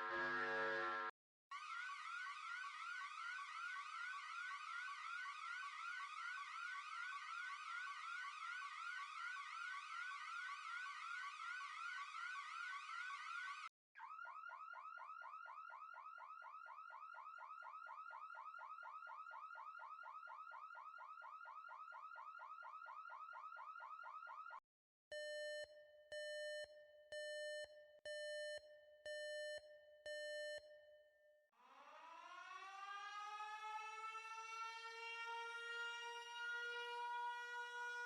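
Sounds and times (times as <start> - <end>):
fast warbling alarm: 0.0 - 24.6, 31.7 - 38.0
siren winding up: 31.8 - 38.0.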